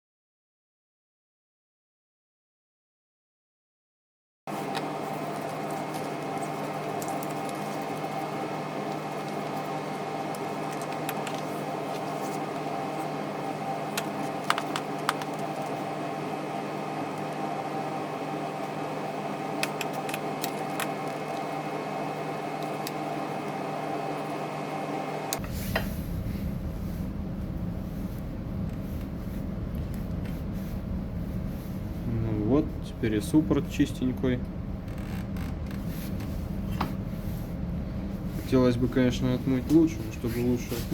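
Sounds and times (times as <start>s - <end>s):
machine-like hum: 4.5s - 40.9s
low rumble: 25.3s - 40.9s.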